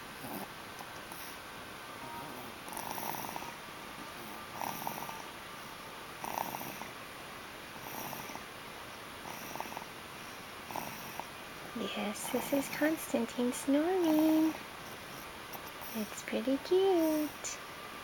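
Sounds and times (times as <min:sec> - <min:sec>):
boy snoring: 0:00.2 - 0:00.5, 0:02.2 - 0:03.6, 0:04.2 - 0:05.2, 0:06.2 - 0:06.9, 0:07.8 - 0:08.4, 0:09.2 - 0:09.9, 0:10.7 - 0:11.3, 0:11.9 - 0:12.9, 0:14.0 - 0:14.6.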